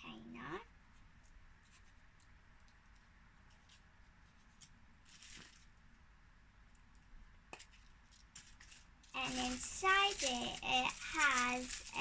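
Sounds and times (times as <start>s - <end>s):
wrapping rustling: 3.5s - 5.9s, 7.6s - 12.0s.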